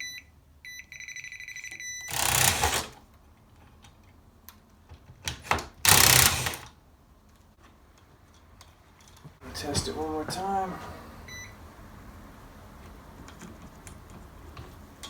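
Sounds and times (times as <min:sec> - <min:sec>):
voltage tester beeping: 0:00.0 - 0:02.6.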